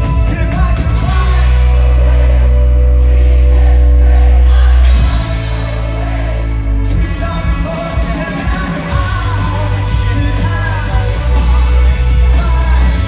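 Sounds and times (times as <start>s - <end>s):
live rock band playing: 0.0s - 13.0s
person singing: 6.8s - 13.0s.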